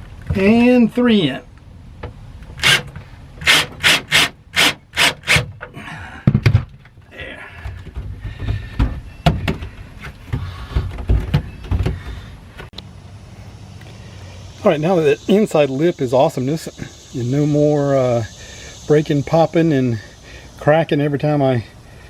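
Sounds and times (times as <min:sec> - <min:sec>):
knocks and rustling: 0:05.4 - 0:12.7.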